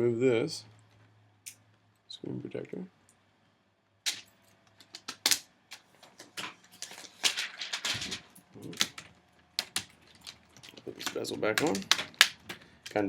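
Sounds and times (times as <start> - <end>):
crackles and clicks of plastic film: 4.1 - 13.0
plastic film peeling off screen: 5.0 - 13.0.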